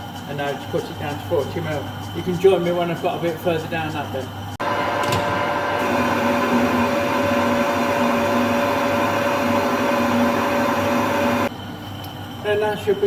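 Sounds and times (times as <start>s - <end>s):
metal cutting noise: 4.6s - 11.5s
metal lathe whining: 4.6s - 11.5s.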